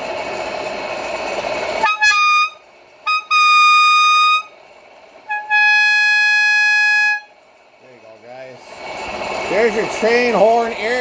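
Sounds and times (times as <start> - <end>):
bicycle air horn blasts: 1.8 - 4.6, 5.3 - 7.4.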